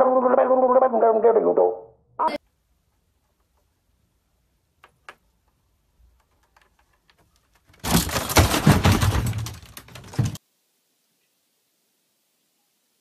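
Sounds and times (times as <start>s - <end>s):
rapid clattering and cracking: 6.1s - 10.4s.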